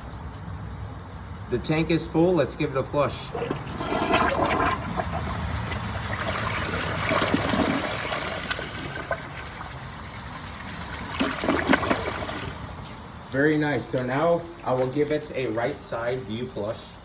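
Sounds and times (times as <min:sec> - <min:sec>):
toilet flushing: 0:03.1 - 0:12.7.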